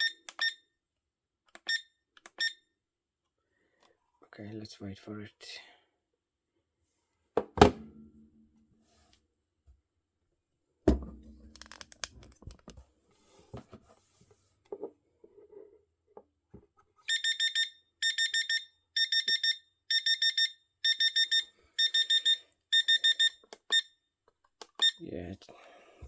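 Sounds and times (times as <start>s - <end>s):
alarm clock beeping: 0.0s - 0.7s, 1.6s - 2.7s, 17.1s - 24.0s.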